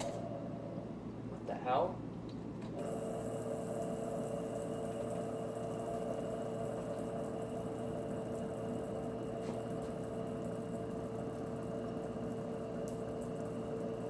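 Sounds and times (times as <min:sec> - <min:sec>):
constant electrical hum: 0:00.0 - 0:14.0
electrical arcing buzzing hiss: 0:02.7 - 0:14.0.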